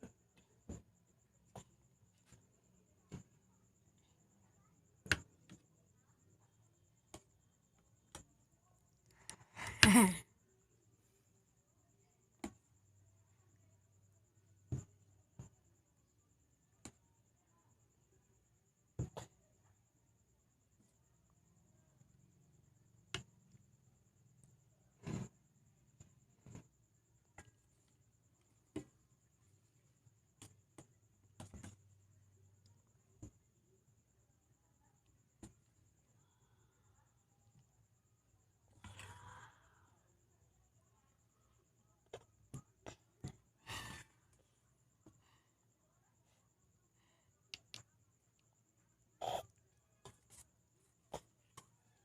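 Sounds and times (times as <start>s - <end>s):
faint clicks and taps: 0.0s - 9.5s, 24.3s - 33.7s, 47.3s - 48.6s.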